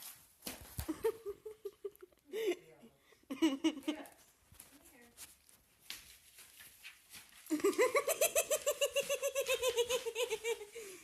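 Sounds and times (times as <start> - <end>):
person giggling high-pitched: 7.5 - 11.0.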